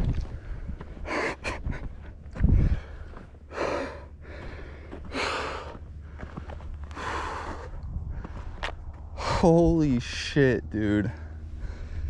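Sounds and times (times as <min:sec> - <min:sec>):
man breathing heavily: 0:00.1 - 0:09.6, 0:11.1 - 0:12.0.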